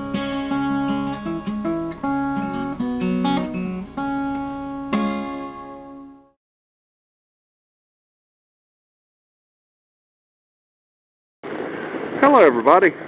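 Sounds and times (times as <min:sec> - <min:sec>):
acoustic guitar strumming chords: 0:00.0 - 0:06.4.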